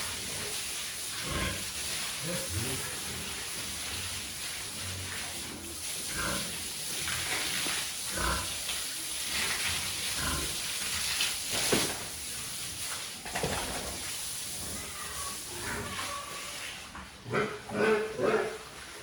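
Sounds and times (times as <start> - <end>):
steady hiss: 0.0 - 15.8.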